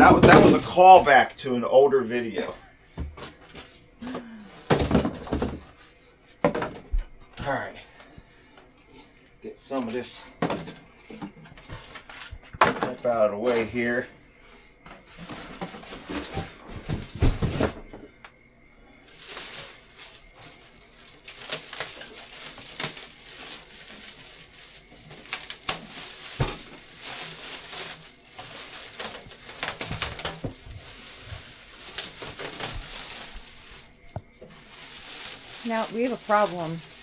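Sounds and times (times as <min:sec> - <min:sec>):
packing material rustling: 0:19.0 - 0:37.0.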